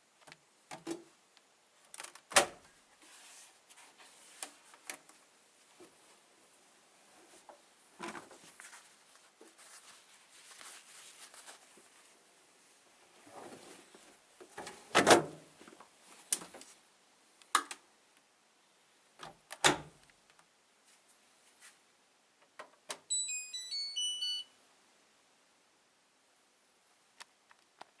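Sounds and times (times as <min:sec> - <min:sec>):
electronic beeping tune: 0:23.1 - 0:24.5.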